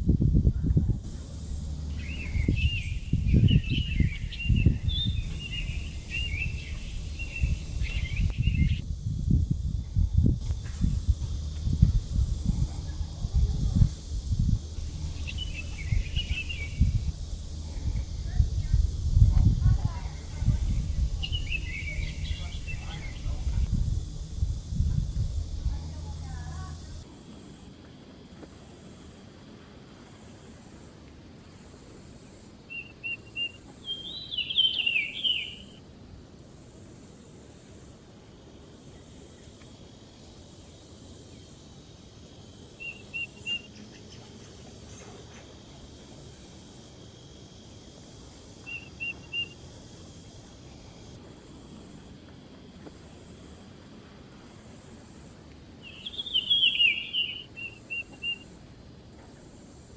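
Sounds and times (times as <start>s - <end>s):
faint pulsing high hiss: 0.0s - 59.9s
bird triple chirps: 1.2s - 8.8s, 10.8s - 18.7s, 20.0s - 24.3s, 55.8s - 58.5s
bird singing warbled phrase: 1.3s - 8.8s, 12.5s - 19.0s, 19.8s - 24.4s, 55.9s - 58.4s.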